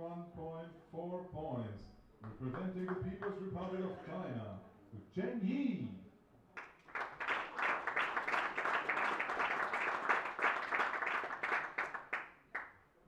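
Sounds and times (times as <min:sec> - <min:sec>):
audience applauding: 0:06.6 - 0:12.7.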